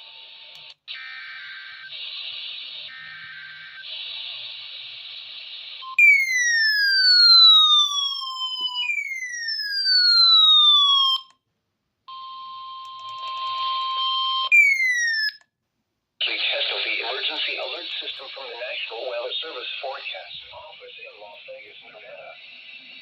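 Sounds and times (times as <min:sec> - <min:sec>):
radio hiss: 0:01.7 - 0:05.9, 0:16.2 - 0:23.0
falling siren-like tones: 0:05.9 - 0:11.3, 0:13.7 - 0:15.4.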